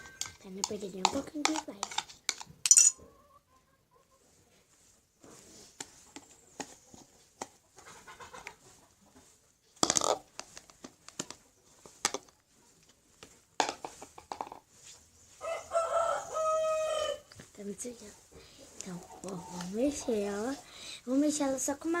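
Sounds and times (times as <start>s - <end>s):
spoon scraping plastic pot: 0.0s - 3.0s.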